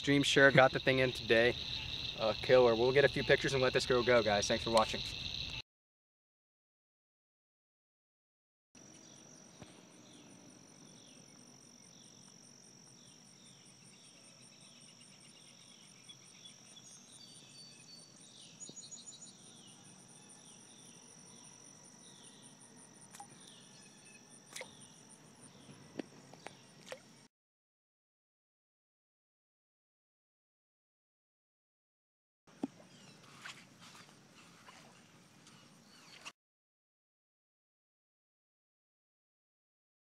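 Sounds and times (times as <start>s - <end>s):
insects droning and trilling: 0.0s - 5.6s, 8.8s - 27.3s.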